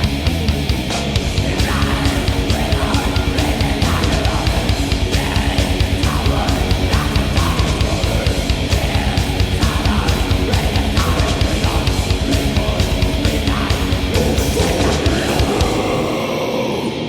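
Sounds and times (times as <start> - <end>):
fast driving drums: 0.0 - 16.2
distorted electric guitars: 0.0 - 17.0.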